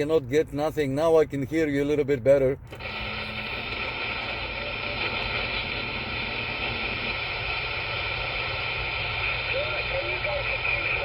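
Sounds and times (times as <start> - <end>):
radio static hiss: 2.7 - 11.0.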